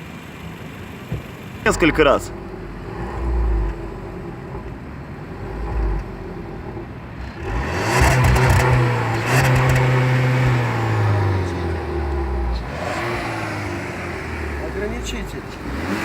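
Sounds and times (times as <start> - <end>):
car engine revving: 1.4 - 16.0.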